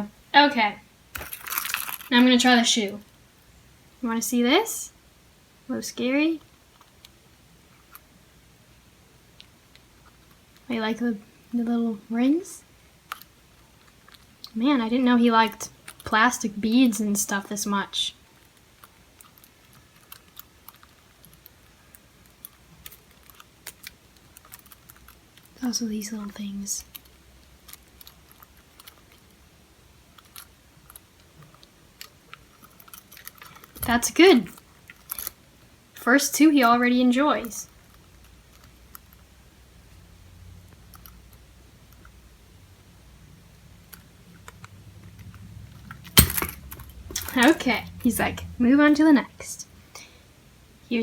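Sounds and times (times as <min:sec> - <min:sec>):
plastic beads rattling: 0:01.2 - 0:02.4.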